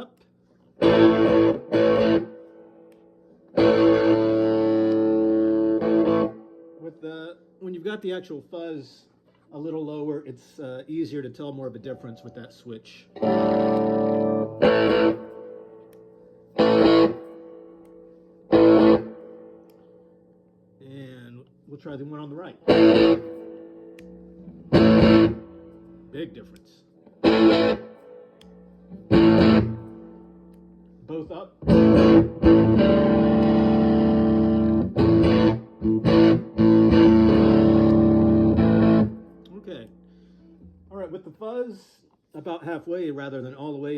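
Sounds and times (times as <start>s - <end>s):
distorted electric guitar chords: 0.8s - 6.8s, 13.2s - 15.9s, 16.5s - 17.8s, 18.5s - 19.7s, 22.6s - 26.1s, 27.1s - 30.9s, 31.6s - 40.8s.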